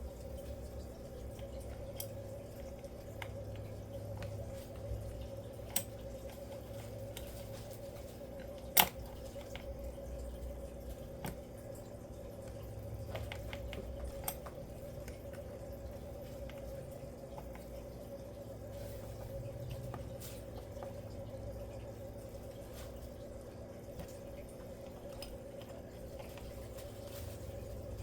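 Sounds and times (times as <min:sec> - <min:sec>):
steady hum: 0:00.0 - 0:28.0.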